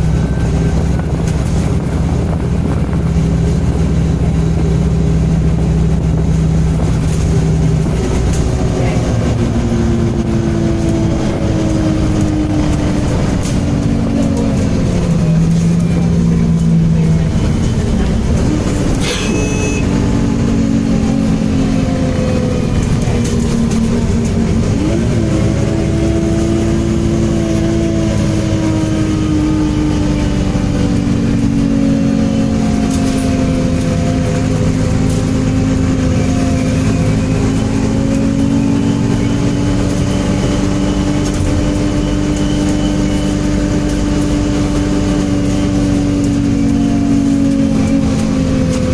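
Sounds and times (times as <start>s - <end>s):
bus diesel engine running: 0.0s - 48.9s
brief high-pitched tone: 19.0s - 20.0s.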